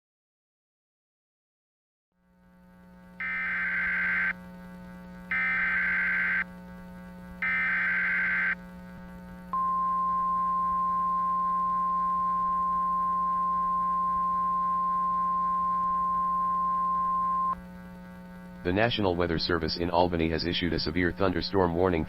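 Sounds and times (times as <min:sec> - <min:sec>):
low steady hum: 0:02.2 - 0:22.0
steady high alarm tone: 0:03.2 - 0:04.4, 0:05.3 - 0:06.5, 0:07.4 - 0:08.6, 0:09.6 - 0:17.6.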